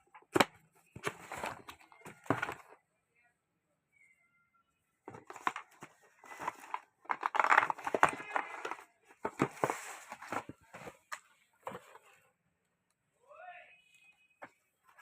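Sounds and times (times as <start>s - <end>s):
packaging rustling and crinkling: 5.1s - 12.2s.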